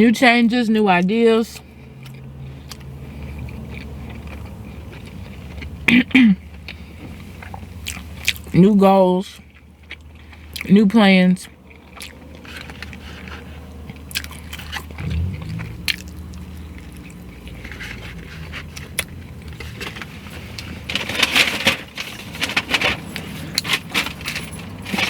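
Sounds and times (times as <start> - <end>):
crunchy chewing: 1.6 - 8.6, 9.4 - 10.7, 11.4 - 20.9
low hum: 14.9 - 19.6.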